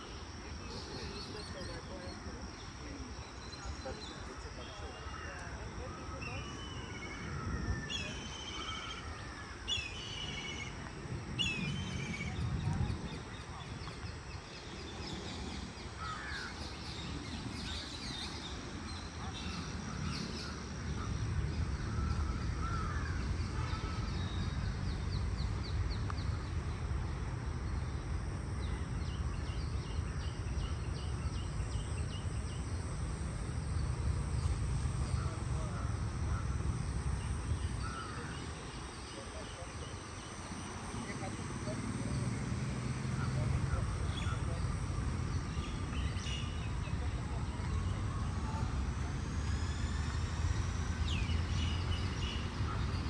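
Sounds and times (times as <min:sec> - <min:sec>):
low steady rumble: 0:05.6 - 0:53.0
birds calling and chirping: 0:28.3 - 0:53.0.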